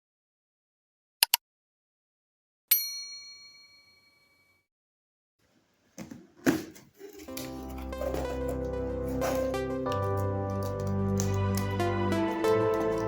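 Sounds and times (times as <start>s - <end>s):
bright bell-like ding: 2.7s - 4.6s.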